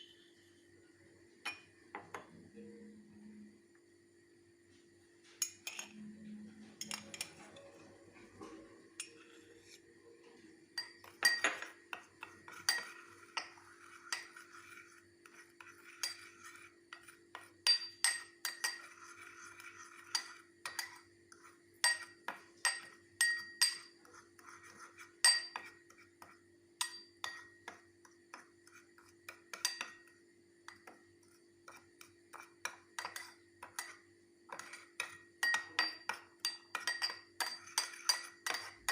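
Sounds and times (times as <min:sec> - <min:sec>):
steady low hum: 0:00.0 - 0:27.6
spoon clinking against a dish: 0:01.4 - 0:02.3, 0:05.4 - 0:06.1, 0:06.7 - 0:07.8, 0:10.7 - 0:38.9.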